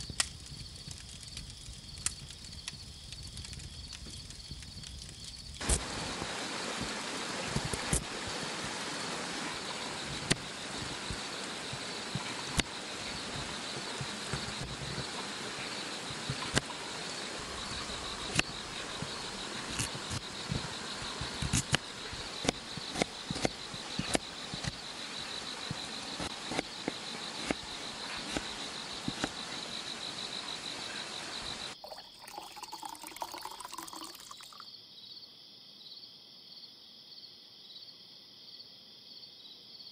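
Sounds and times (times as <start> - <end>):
insects trilling: 0.0 - 37.9
insects chirping: 0.0 - 39.9
stream flowing: 5.6 - 34.6
sharp clicks: 21.2 - 24.8.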